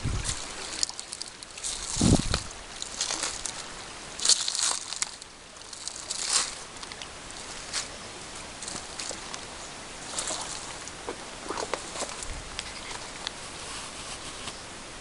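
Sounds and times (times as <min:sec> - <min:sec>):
footsteps crunching through dry grass: 0:00.0 - 0:14.6.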